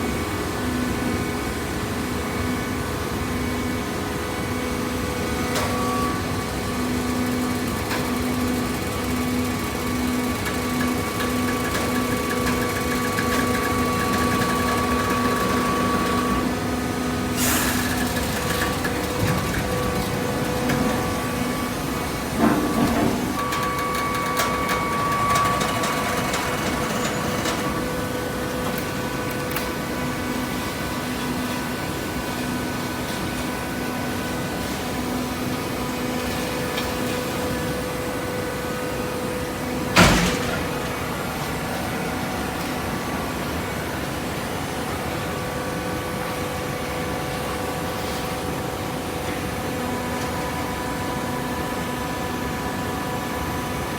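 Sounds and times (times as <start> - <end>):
baling press motor humming: 5.2 - 30.8, 35.9 - 42.3.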